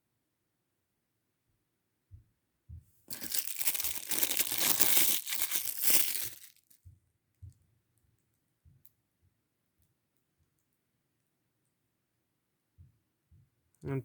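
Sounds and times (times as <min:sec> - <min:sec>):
packaging crinkling and rustling: 0:03.1 - 0:06.8.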